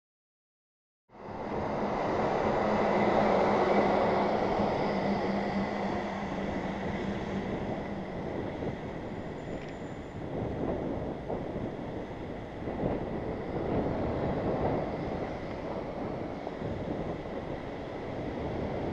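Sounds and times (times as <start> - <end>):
engine hum: 1.1 - 18.9
wind noise: 1.1 - 18.9
road traffic: 1.2 - 18.9.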